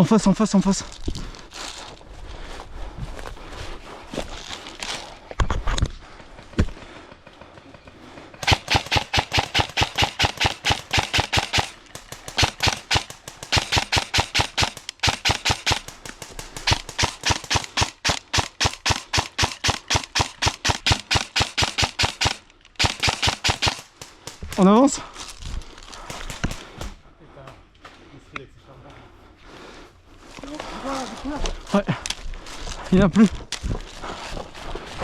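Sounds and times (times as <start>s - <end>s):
airsoft gun rapid shots: 8.4s - 24.9s, 26.1s - 27.0s.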